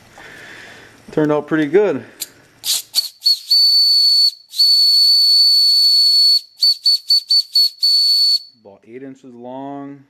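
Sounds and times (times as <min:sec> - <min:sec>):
steam hissing: 0:02.2 - 0:03.7
steam whistle blasts: 0:02.7 - 0:08.5.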